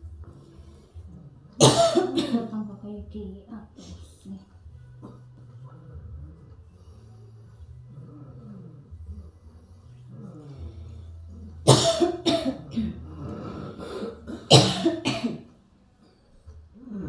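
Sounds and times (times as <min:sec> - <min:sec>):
person coughing hard: 0:01.6 - 0:02.6, 0:11.7 - 0:13.0, 0:13.8 - 0:15.5.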